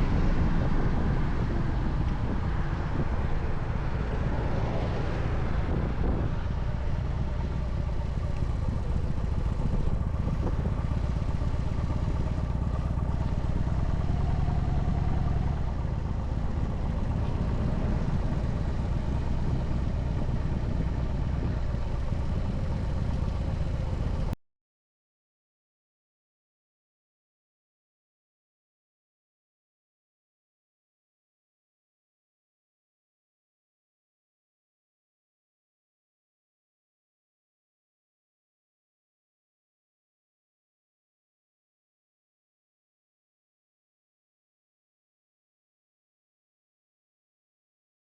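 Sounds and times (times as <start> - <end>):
motorcycle engine drone: 0.0 - 24.4
wind rumble on microphone: 0.0 - 24.4.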